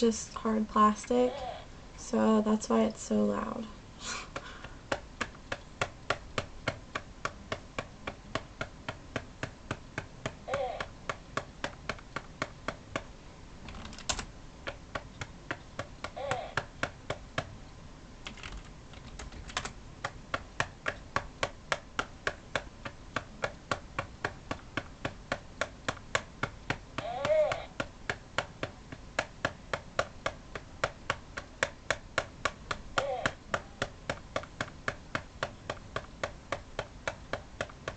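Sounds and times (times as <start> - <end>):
hand patting hard plastic: 4.2 - 17.6, 18.3 - 37.9.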